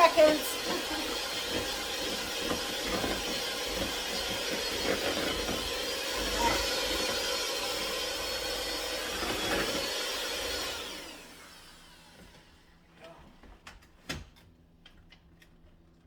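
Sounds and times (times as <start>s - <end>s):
electric mixer running: 0.0s - 12.5s.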